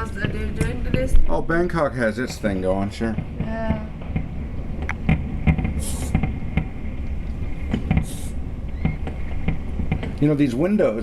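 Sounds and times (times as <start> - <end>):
low steady rumble: 0.0 - 11.0
muffled fireworks bangs: 0.0 - 11.0
hissing bursts: 2.6 - 10.5.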